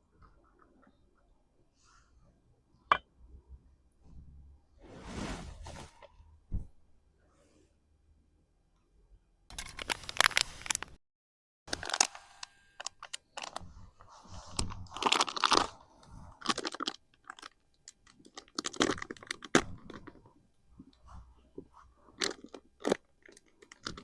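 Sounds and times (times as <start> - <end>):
crisp crunching and clicking: 9.5 - 11.0, 11.7 - 12.2, 14.9 - 15.7, 16.4 - 20.2, 22.2 - 24.0.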